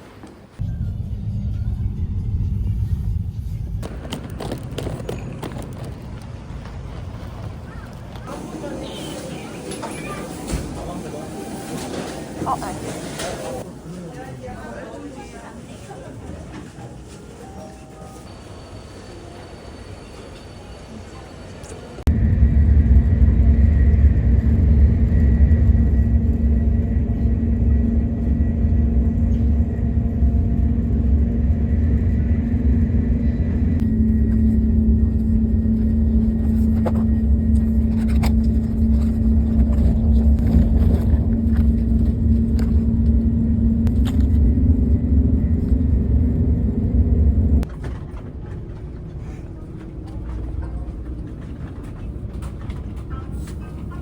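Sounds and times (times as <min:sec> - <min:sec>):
vehicle rumble in motion: 0:00.6 - 0:08.3, 0:22.0 - 0:54.0
constant hum: 0:20.8 - 0:54.0.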